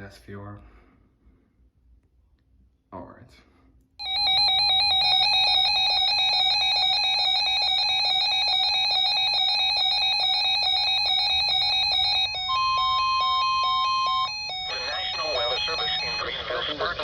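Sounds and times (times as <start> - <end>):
warbling electronic alarm beeping: 4.0 - 17.0.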